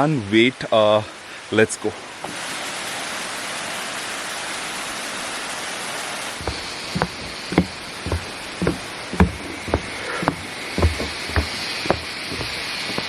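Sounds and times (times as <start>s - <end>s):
footsteps on trail: 6.4s - 13.0s.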